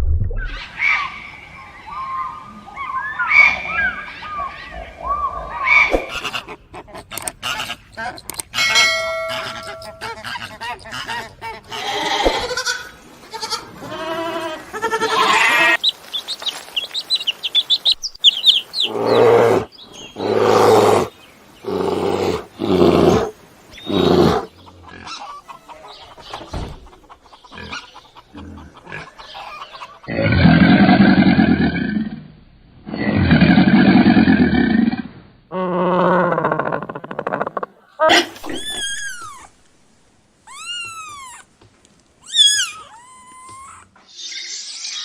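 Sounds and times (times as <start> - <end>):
loud animal calls: 1.9 - 12.8, 18.5 - 25.8, 36.0 - 39.6, 40.5 - 41.5, 42.2 - 45.0
wavering animal calls: 18.3 - 25.9, 35.5 - 39.6, 40.4 - 41.6, 42.2 - 45.0
long loud animal call: 40.5 - 41.4.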